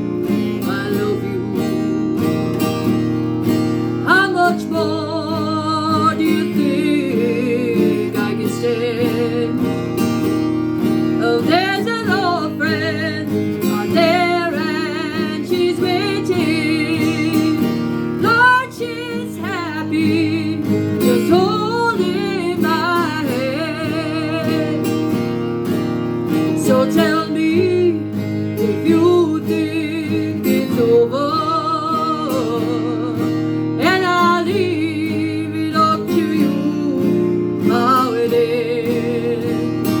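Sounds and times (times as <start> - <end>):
person singing with vibrato: 0.0 - 2.0, 4.0 - 25.4, 26.3 - 40.0
guitar accompaniment: 0.0 - 40.0.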